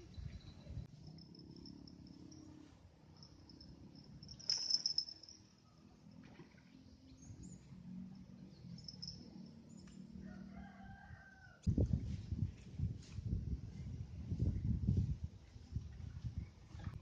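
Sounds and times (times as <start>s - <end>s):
rooster crowing: 10.2s - 11.7s.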